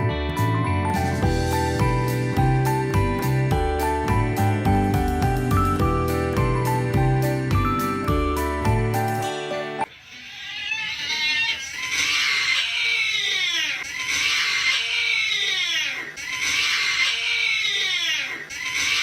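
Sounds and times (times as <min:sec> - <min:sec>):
distorted cat cry: 0:09.9 - 0:19.0.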